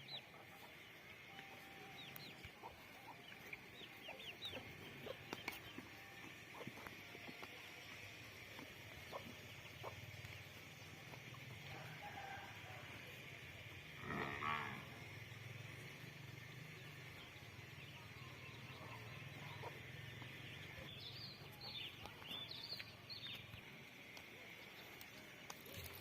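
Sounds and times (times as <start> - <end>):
cow mooing: 14.0 - 15.0.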